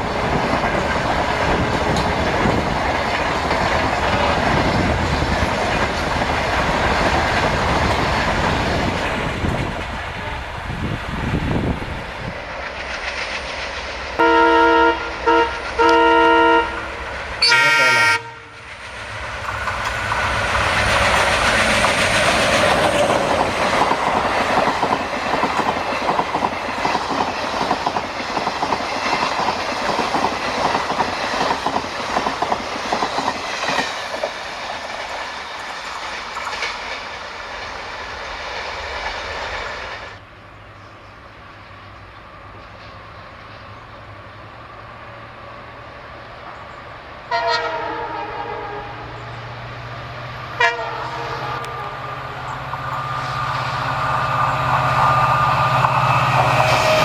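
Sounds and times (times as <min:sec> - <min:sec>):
passing train wheel clatter: 0:00.0 - 0:57.0
train horn blasts: 0:14.2 - 0:18.6, 0:47.3 - 0:49.2, 0:50.6 - 0:53.3.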